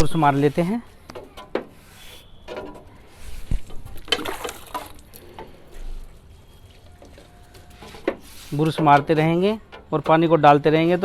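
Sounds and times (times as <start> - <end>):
brush scrubbing metal coil: 7.6 - 9.7.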